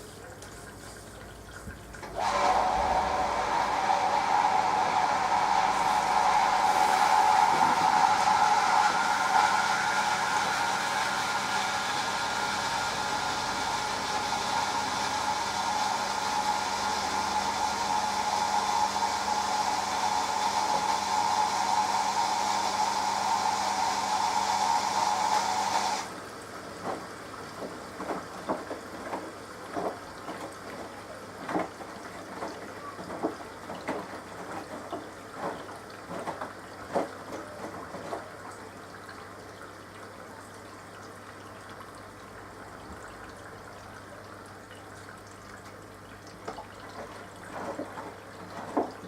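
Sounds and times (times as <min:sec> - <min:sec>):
water splashing and trickling: 0:00.0 - 0:02.2, 0:26.4 - 0:49.0
water rushing into washing machine: 0:00.0 - 0:49.0.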